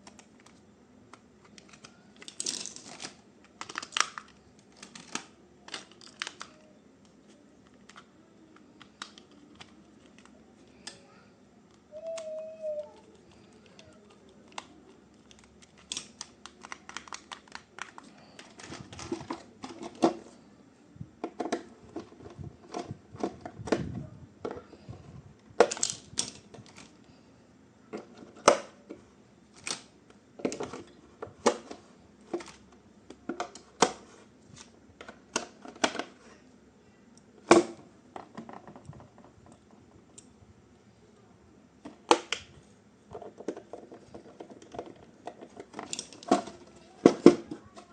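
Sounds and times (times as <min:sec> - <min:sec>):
plastic toy parts clicking: 0:00.0 - 0:06.7, 0:13.0 - 0:20.0, 0:25.6 - 0:26.9
packaging rustling: 0:01.4 - 0:06.6, 0:13.0 - 0:19.9.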